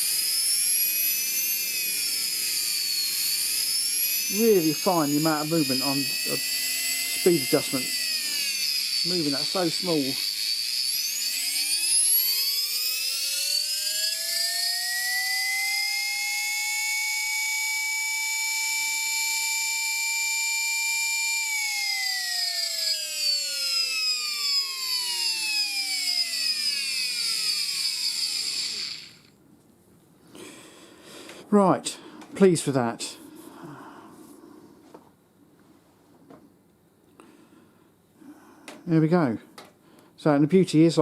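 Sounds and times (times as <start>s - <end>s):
air grinder motor whine: 0.0s - 29.4s.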